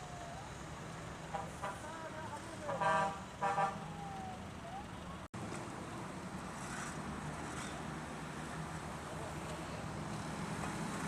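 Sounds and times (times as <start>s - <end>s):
street and traffic noise: 0.0s - 11.0s
vehicle horn: 2.7s - 3.8s.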